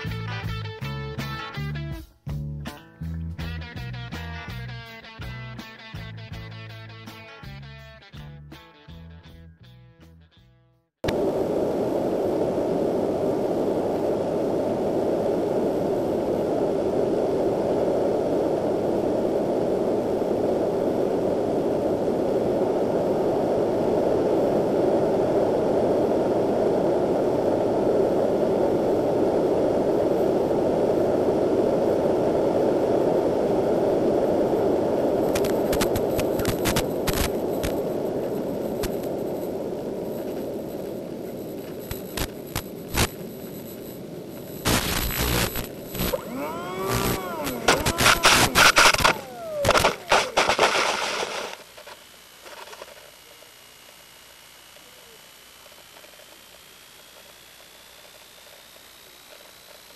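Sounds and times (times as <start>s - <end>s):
wind and radio static hiss: 11.0s - 59.9s
crackling clicks: 35.2s - 54.0s, 55.6s - 59.9s.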